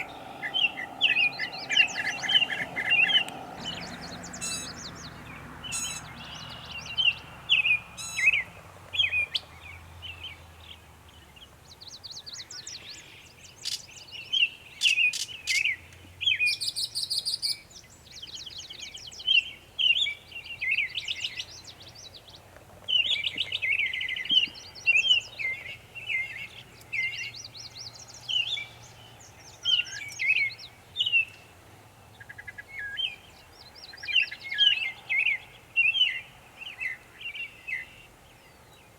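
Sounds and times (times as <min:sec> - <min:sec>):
mockingbird singing: 0:00.0 - 0:10.4.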